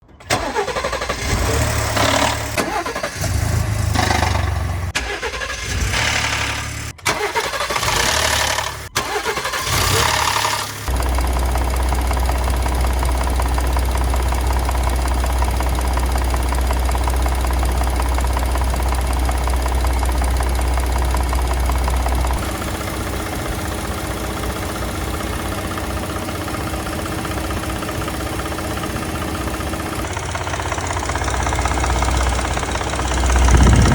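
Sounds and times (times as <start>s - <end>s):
car engine starting and running: 0.0s - 33.9s
engine rattle: 0.0s - 33.9s.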